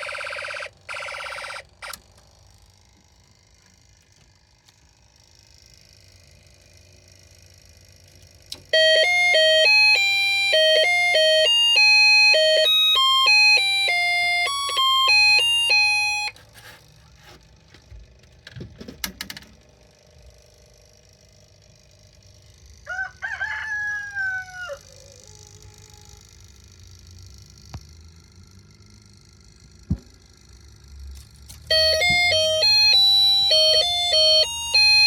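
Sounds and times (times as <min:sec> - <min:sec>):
buzzy electronic beeping melody: 0:31.7 - 0:35.0.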